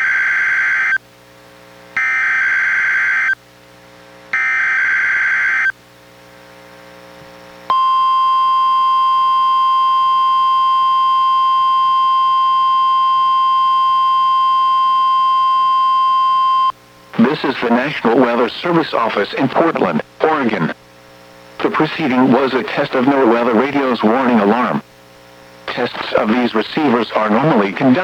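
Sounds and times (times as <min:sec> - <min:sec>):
steady warning alarm tone: 0:00.0 - 0:01.0, 0:02.0 - 0:03.4, 0:04.3 - 0:05.8, 0:07.7 - 0:19.2.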